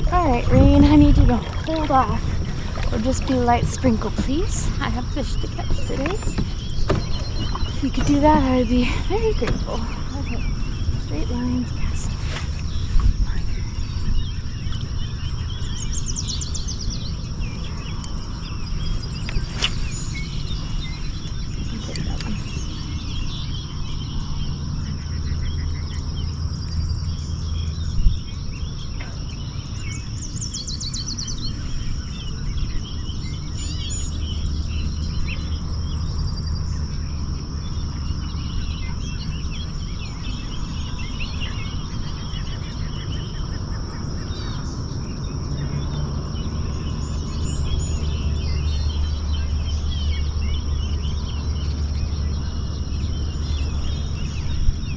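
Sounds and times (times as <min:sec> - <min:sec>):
birds trilling: 0:00.0 - 0:54.9
low rumble: 0:00.0 - 0:54.9
high thin drone: 0:19.0 - 0:23.0.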